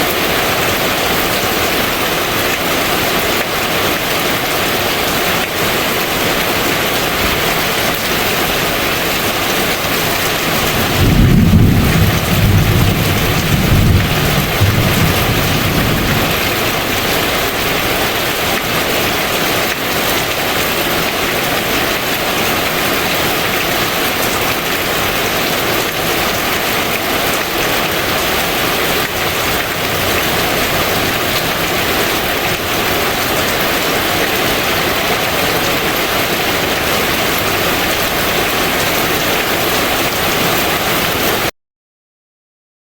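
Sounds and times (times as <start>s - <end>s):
steady rain falling: 0.0s - 41.5s
thunder rumbling: 10.0s - 18.3s, 27.2s - 34.1s.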